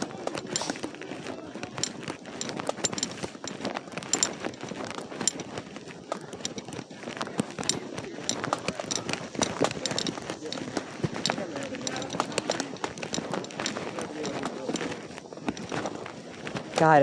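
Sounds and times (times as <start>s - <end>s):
running footsteps in boots: 0.0s - 17.0s.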